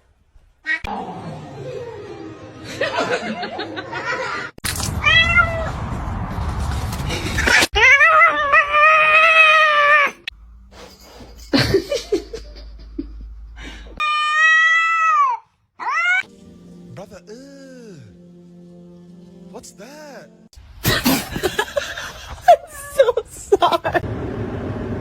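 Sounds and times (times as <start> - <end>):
cats meowing: 7.8 - 10.3, 14.0 - 16.3.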